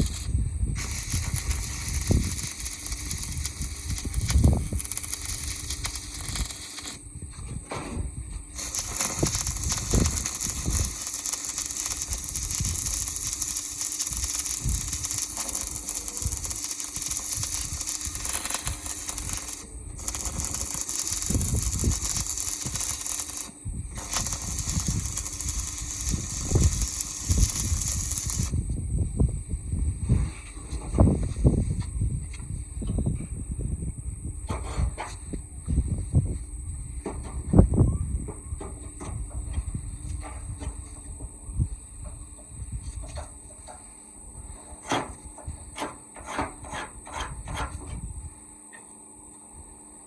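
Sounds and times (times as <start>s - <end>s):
arc welding crackling hiss: 0.0s - 7.2s, 8.4s - 28.7s.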